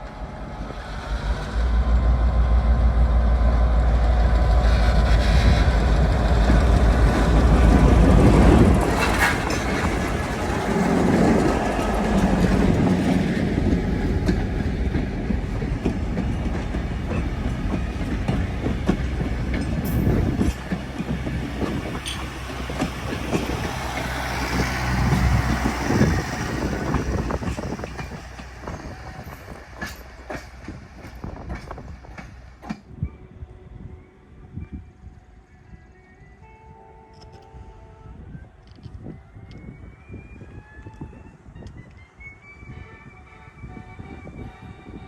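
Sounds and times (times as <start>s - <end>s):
train engine rumble: 0.0s - 45.0s
train wheels clacking: 3.9s - 33.0s.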